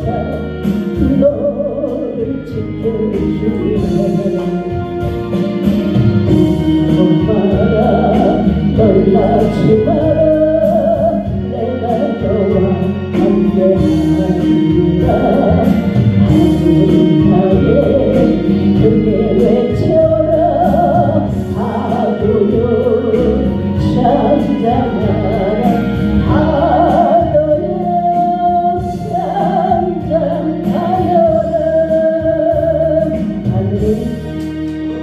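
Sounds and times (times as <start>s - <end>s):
person singing long notes: 0.0s - 5.3s, 6.1s - 35.0s
instrumental accompaniment: 0.0s - 35.0s.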